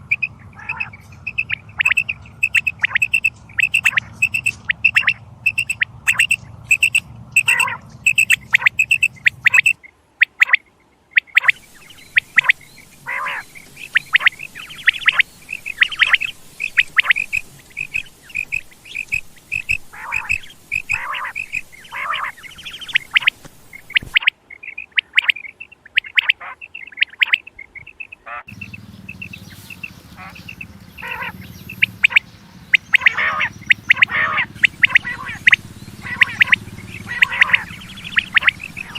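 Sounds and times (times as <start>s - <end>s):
quail calling: 0.0s - 38.9s
low hum: 28.5s - 38.9s.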